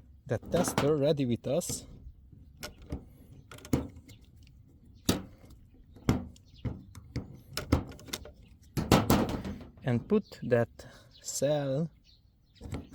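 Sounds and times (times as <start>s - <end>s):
sharp clicks and knocks: 1.6s - 10.2s.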